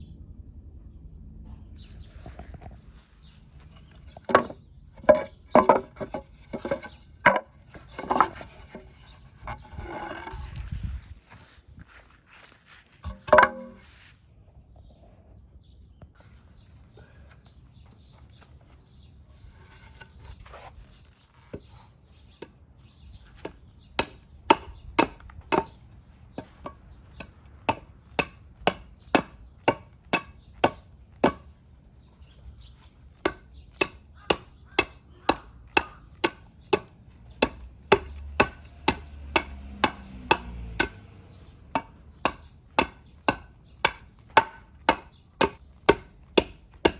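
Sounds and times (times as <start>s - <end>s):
axe chopping wood: 3.8s - 8.8s, 13.0s - 13.8s, 22.3s - 46.9s.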